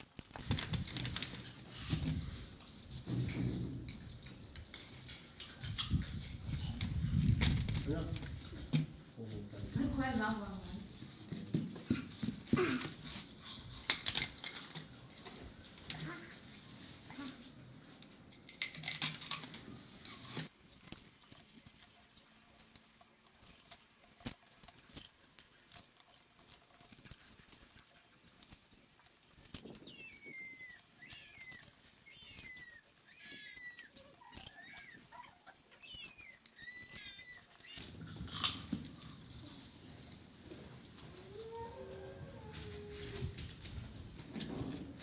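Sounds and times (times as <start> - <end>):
small animal chirping: 25.6 - 37.9.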